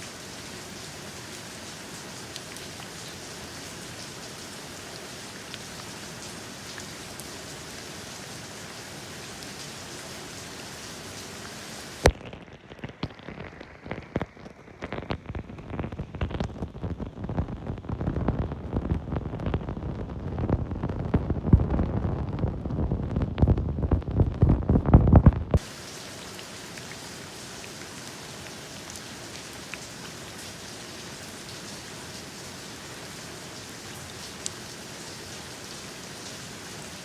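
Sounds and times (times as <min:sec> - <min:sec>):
steady rain falling: 0:00.0 - 0:37.0
low thumping and rumbling: 0:20.6 - 0:25.6.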